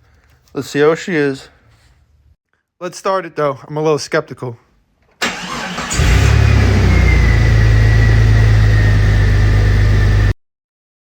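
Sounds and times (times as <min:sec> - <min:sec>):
engine starting: 0:05.2 - 0:07.4
loud engine running: 0:05.9 - 0:10.3.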